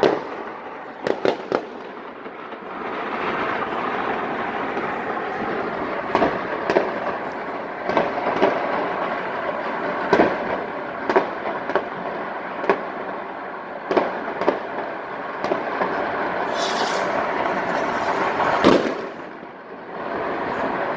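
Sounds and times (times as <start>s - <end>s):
sharp firework bangs: 0.0s - 12.9s, 13.9s - 19.6s
distant firework bangs: 0.0s - 19.7s
fireworks crackling: 0.0s - 20.9s
firework hiss: 13.8s - 20.9s.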